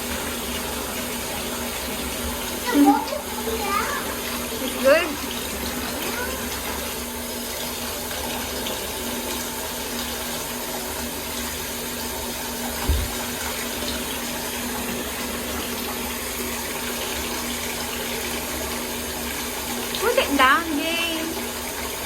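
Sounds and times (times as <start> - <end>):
tap water running into bathtub: 0.0 - 22.0
low thump: 12.8 - 13.2.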